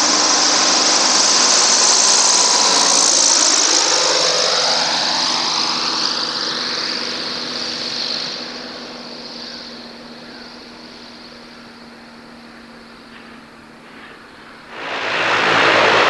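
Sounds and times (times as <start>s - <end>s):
turboprop airliner passing by: 14.5s - 16.0s.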